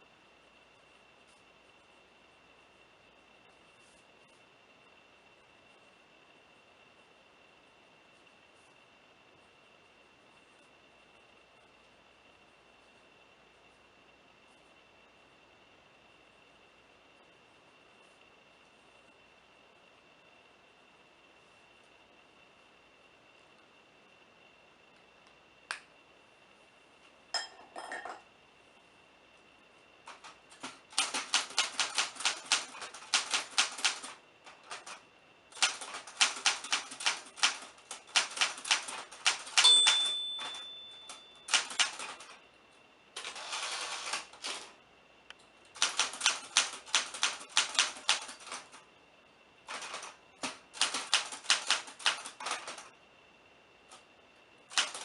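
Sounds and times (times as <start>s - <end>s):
typewriter keys clacking: 30.1s - 35.0s, 35.6s - 42.3s, 45.8s - 48.7s, 49.7s - 52.8s, 54.7s - 55.0s
typewriter margin bell ding: 39.4s - 42.1s.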